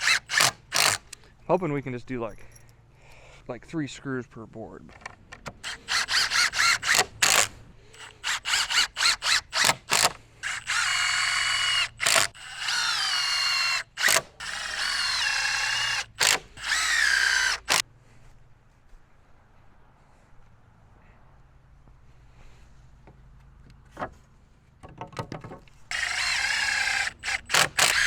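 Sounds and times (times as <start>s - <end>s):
power drill driving screws into wood: 0.0s - 1.2s, 5.4s - 17.8s, 25.9s - 28.0s.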